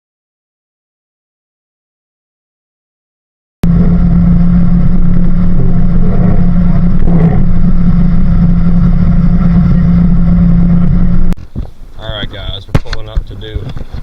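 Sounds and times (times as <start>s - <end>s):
outboard motor running: 3.6s - 14.0s.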